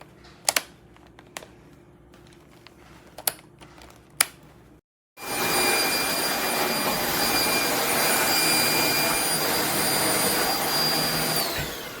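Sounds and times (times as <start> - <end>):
stick vacuum running: 5.2 - 12.0.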